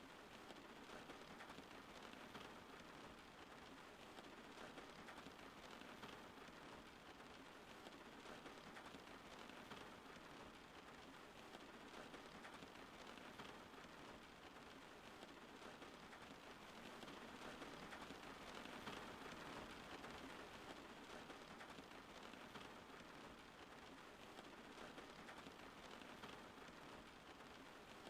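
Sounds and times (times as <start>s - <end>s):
faint steady rain: 0.0s - 28.0s.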